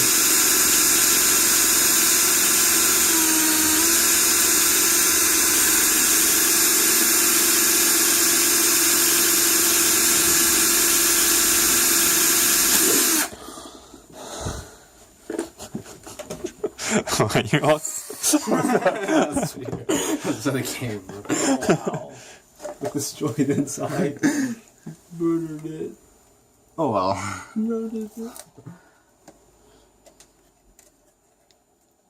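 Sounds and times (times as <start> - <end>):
electric drill boring wood: 0.0 - 13.4.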